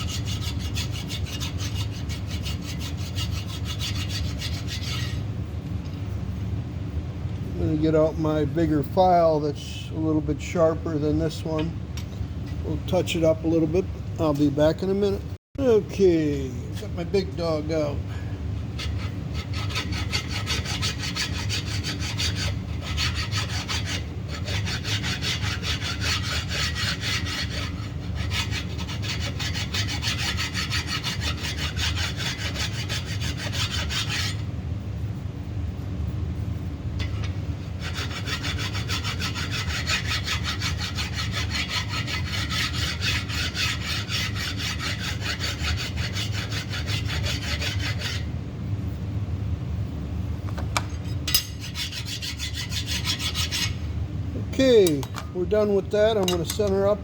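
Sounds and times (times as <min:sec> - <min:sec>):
file rasping on metal: 0:00.0 - 0:05.2, 0:18.8 - 0:34.4, 0:37.0 - 0:48.3, 0:51.3 - 0:53.8.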